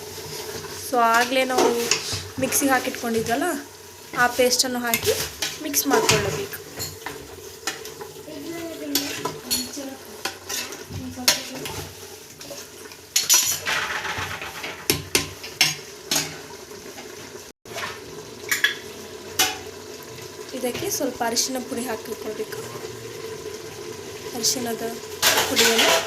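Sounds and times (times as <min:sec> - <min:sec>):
chicken frying with a sizzle: 0:00.0 - 0:26.0
metal spoon scraping a pot: 0:08.9 - 0:12.6, 0:25.2 - 0:26.0.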